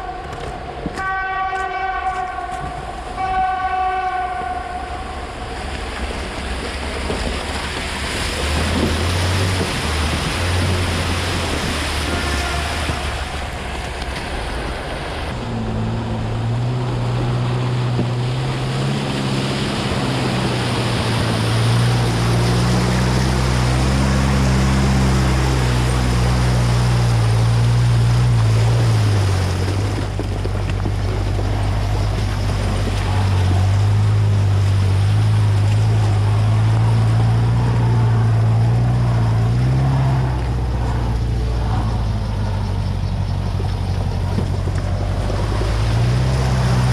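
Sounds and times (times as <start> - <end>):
engine revving under load: 8.1 - 12.0, 15.2 - 30.1.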